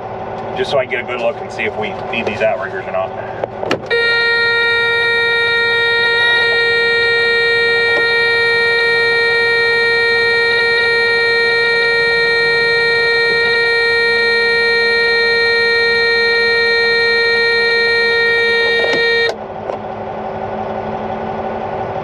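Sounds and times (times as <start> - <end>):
diesel engine idling: 0.0 - 22.0
steady alarm warning tone: 3.9 - 19.4.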